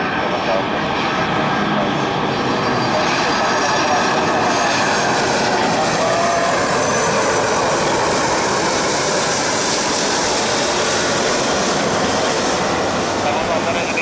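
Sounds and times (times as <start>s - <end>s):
jet airliner engines roaring: 0.0s - 14.0s.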